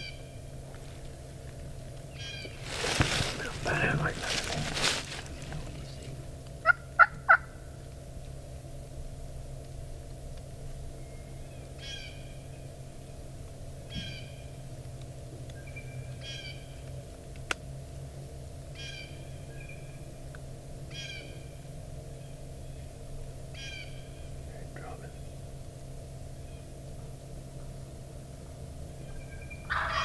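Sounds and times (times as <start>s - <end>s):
wild turkey call notes: 2.0s - 7.8s, 11.0s - 12.6s, 13.9s - 14.6s, 15.6s - 16.8s, 18.7s - 20.0s, 20.9s - 22.9s, 23.5s - 25.3s, 29.0s - 30.0s.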